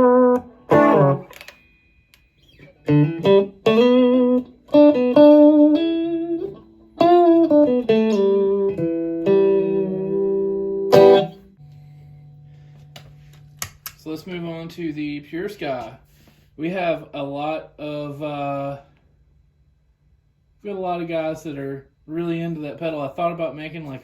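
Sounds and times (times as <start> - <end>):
clean electric guitar: 0.0 - 1.6, 2.4 - 14.2.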